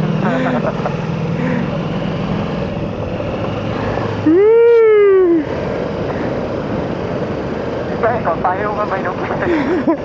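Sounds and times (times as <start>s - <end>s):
motorcycle engine: 0.0s - 8.8s
wind: 0.0s - 10.0s.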